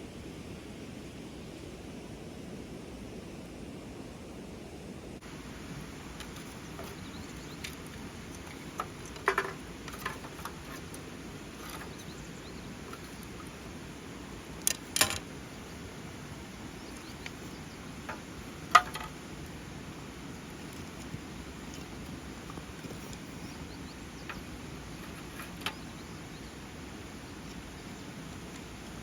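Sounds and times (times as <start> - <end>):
sharp clicks and knocks: 6.2 - 11.0, 14.6 - 15.2, 18.1 - 19.2.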